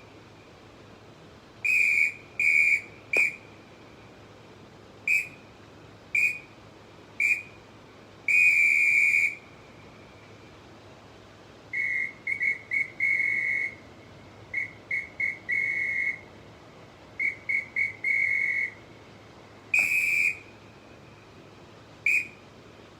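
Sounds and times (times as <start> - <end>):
referee whistle blasts: 1.6 - 3.4, 5.1 - 5.4, 6.2 - 6.5, 7.2 - 7.6, 8.3 - 9.4, 11.7 - 13.8, 14.5 - 16.2, 17.2 - 18.8, 19.7 - 20.6, 22.1 - 22.4.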